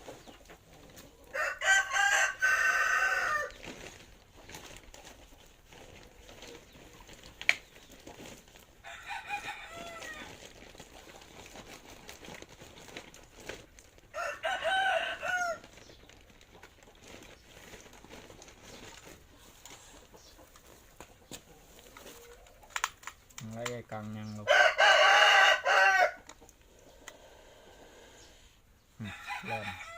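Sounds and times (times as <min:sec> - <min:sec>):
rooster crowing: 0:01.3 - 0:03.5, 0:08.8 - 0:10.3, 0:14.1 - 0:15.6, 0:24.5 - 0:26.2, 0:29.0 - 0:29.9.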